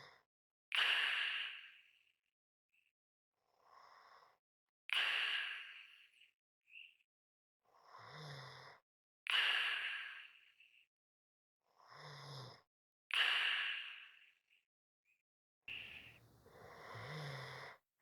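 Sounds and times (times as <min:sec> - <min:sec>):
person breathing heavily: 0:15.7 - 0:17.6
snore-like rasping breath: 0:15.7 - 0:17.8.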